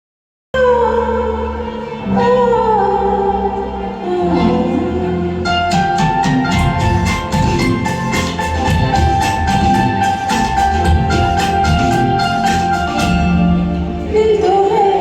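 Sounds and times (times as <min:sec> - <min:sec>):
held chords with gliding melody: 0:00.6 - 0:15.0
quick struck notes: 0:05.6 - 0:14.0.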